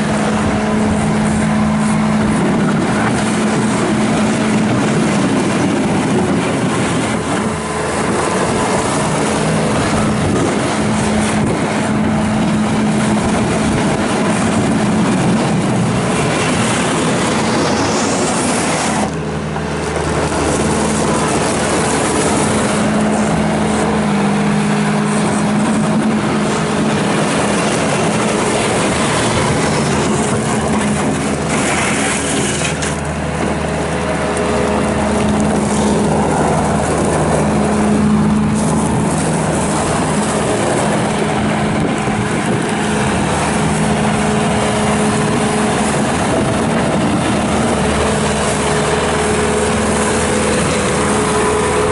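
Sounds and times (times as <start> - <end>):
diesel engine running steadily: 0.0 - 51.9.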